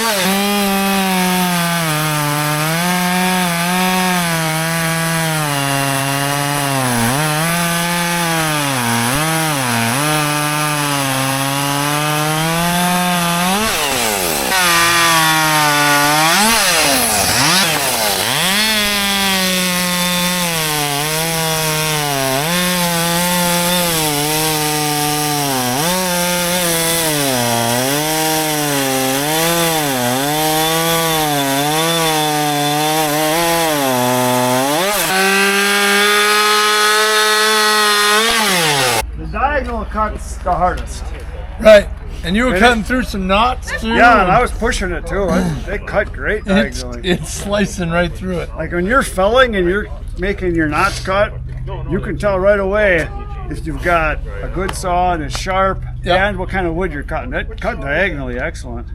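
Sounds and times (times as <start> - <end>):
chainsaw cutting at full throttle: 0.0 - 39.1, 45.2 - 45.8.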